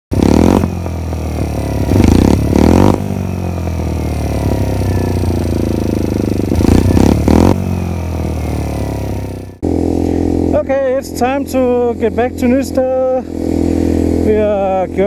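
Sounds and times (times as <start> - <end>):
small motorcycle engine running: 0.1 - 15.0.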